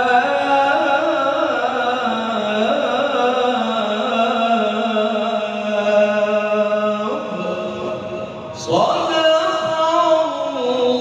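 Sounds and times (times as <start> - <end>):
man reciting melodically: 0.0 - 11.0.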